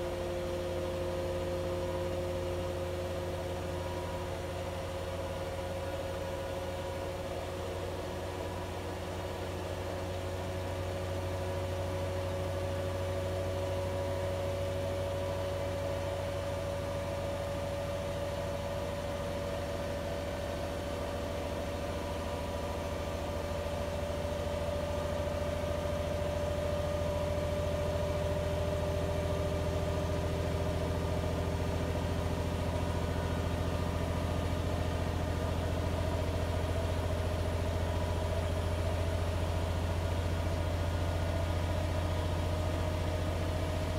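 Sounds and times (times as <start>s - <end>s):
washing machine spinning: 16.1s - 43.9s.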